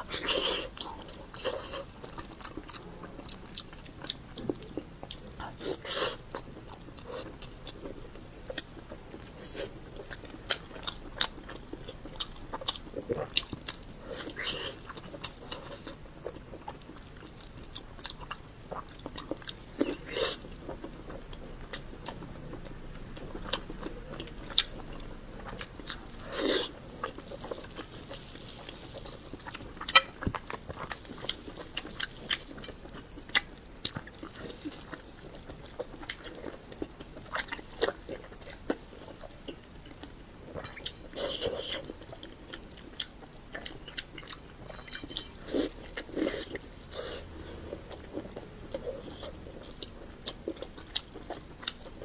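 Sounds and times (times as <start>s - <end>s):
close chewing and mouth clicks: 0.0s - 52.0s.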